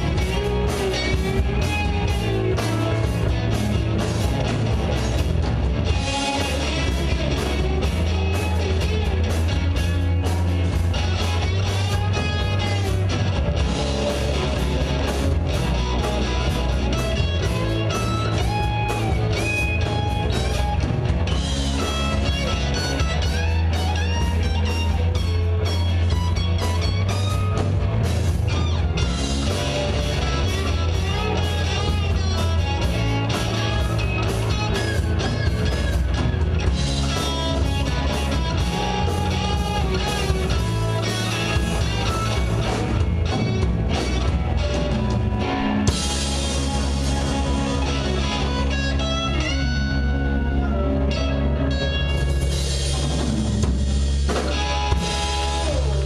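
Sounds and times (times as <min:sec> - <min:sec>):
electric guitar bending melodic lines: 0:00.0 - 0:56.0
rock band playing: 0:00.0 - 0:56.0.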